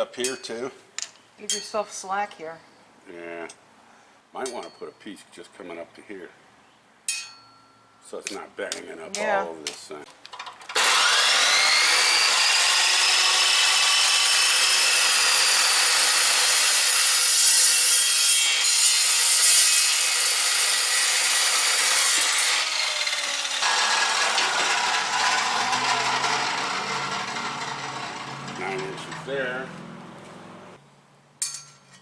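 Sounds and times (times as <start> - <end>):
power tool cutting steel: 10.7 - 30.7.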